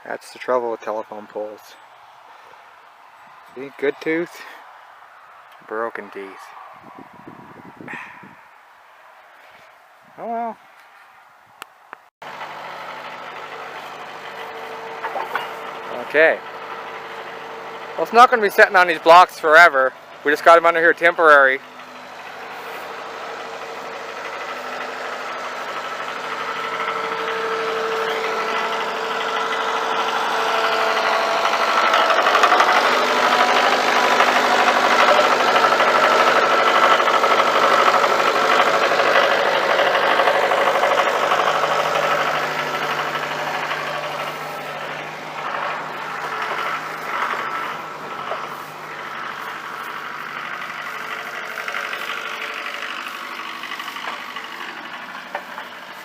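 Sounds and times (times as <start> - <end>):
engine running: 12.2 - 56.0.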